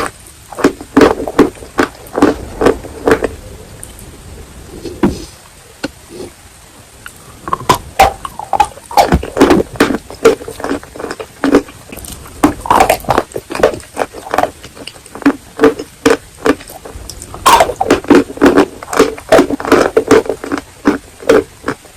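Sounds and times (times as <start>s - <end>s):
chewing crunches: 0.0s - 4.0s, 7.0s - 21.9s
wet mouth clicks: 7.0s - 21.8s.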